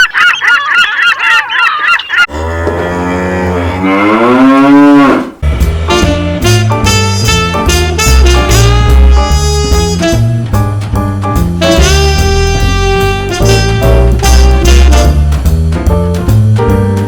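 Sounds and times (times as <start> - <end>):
cow mooing: 2.3 - 6.4
upbeat jazz music: 5.4 - 17.0.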